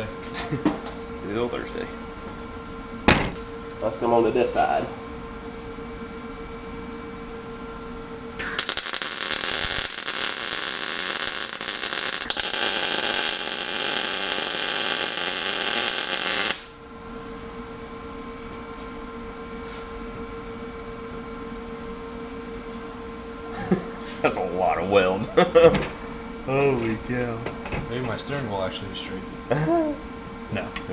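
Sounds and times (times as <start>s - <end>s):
steady hum: 0.0s - 30.9s
welding arc hissing: 8.4s - 16.8s.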